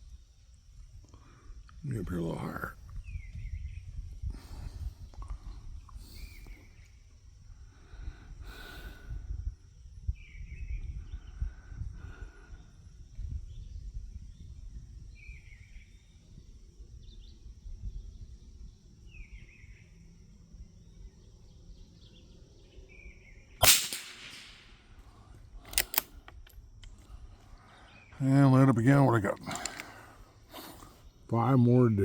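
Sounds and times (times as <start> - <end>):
birds chirping: 1.2 - 9.0, 10.2 - 32.0
wind on microphone: 2.6 - 19.6
rifle bolt clicks: 23.6 - 24.7, 25.6 - 27.1, 29.4 - 30.0
rifle shot with echo: 23.6 - 25.0.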